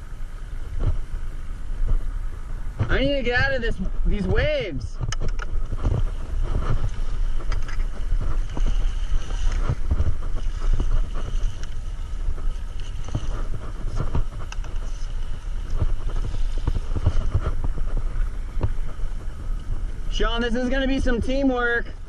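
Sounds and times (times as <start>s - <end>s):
surf: 0.0s - 22.0s
wind buffeting microphone: 0.0s - 22.0s
water slapping against paddleboard: 5.0s - 19.9s.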